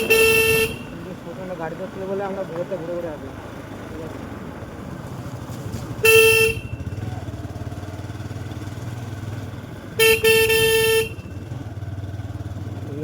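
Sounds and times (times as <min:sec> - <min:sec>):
vehicle horn honking: 0:00.0 - 0:01.1, 0:06.0 - 0:07.0, 0:09.9 - 0:11.4
motorcycle engine drone: 0:00.0 - 0:13.0.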